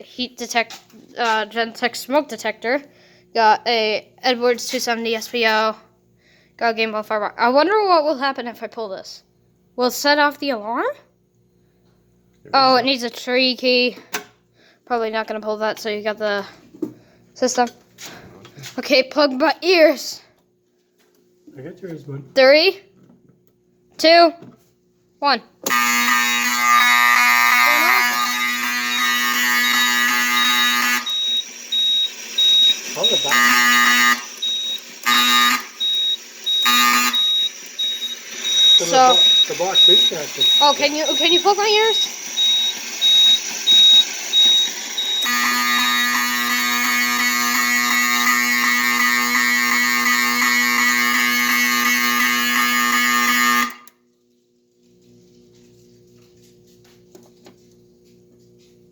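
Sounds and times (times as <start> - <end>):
fire alarm horn buzzing: 25.2 - 54.1
high electronic beep: 27.7 - 47.2.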